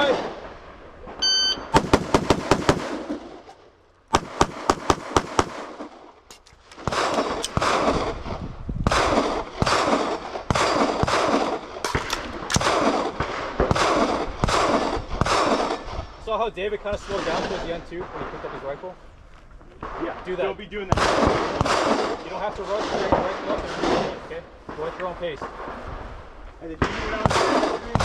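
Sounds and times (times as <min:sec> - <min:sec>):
gunshots with heavy echo: 0:01.6 - 0:03.5, 0:04.1 - 0:06.0, 0:06.8 - 0:08.2, 0:08.9 - 0:15.8, 0:20.9 - 0:25.8, 0:26.8 - 0:28.0.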